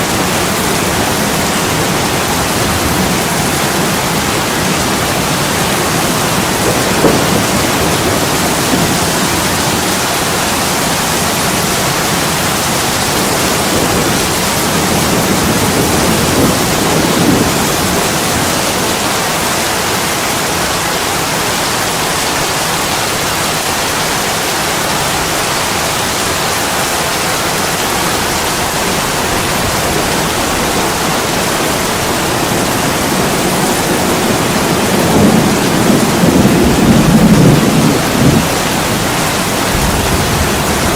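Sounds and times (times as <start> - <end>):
heavy rain on a window: 0.0 - 40.9
low rumble of thunder: 0.9 - 10.3, 33.7 - 40.9.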